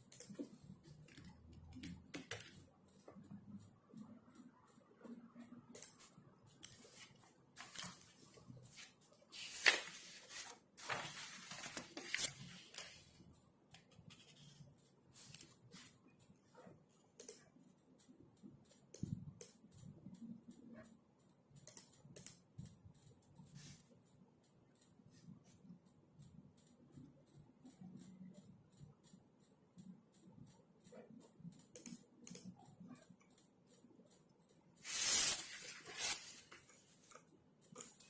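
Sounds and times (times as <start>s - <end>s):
keyboard typing: 0.0s - 38.0s
rustling: 6.7s - 12.9s, 34.8s - 37.2s.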